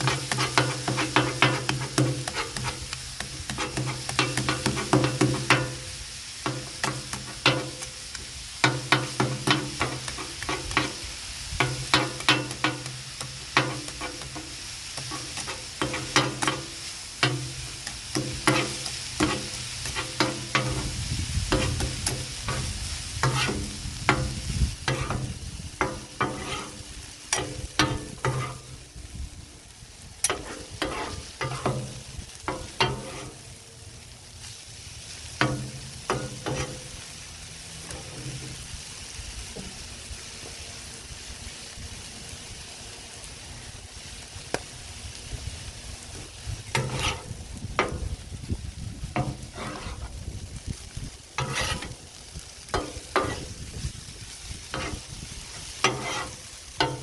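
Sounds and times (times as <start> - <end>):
metal spatulas scraping on griddle: 0.0 - 28.8, 30.2 - 33.6, 34.4 - 37.1, 37.8 - 38.7, 46.1 - 48.2, 49.1 - 50.2, 51.2 - 57.0
meat sizzling: 0.0 - 57.0.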